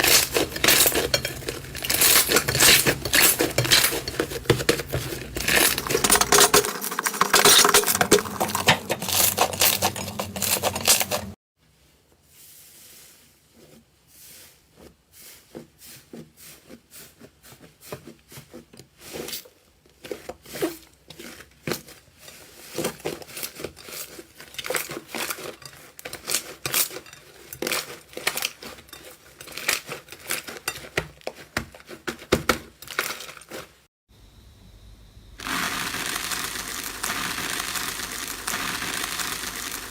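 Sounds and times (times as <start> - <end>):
slime clicking and crackling: 0.0 - 11.3.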